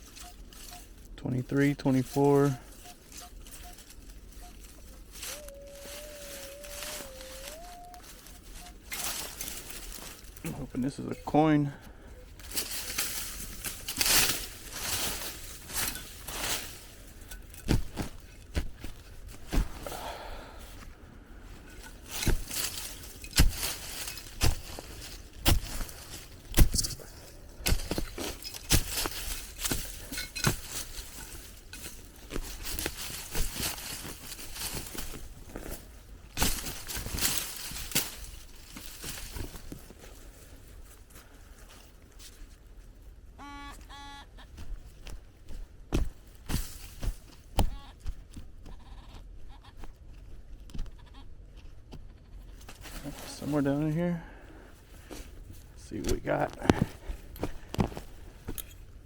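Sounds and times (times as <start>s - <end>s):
scraping and crunching of dirt: 0.0s - 59.0s
digging tool scraping soil: 21.6s - 39.8s
blade knocking ground: 21.8s - 35.2s.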